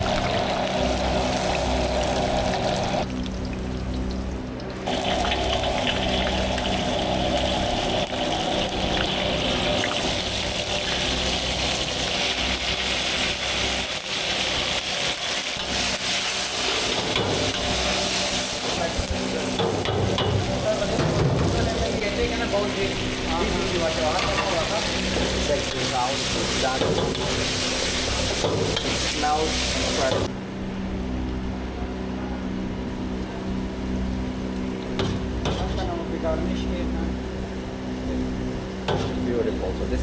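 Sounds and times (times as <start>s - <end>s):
chicken sizzling in a pan: 4.9s - 30.3s.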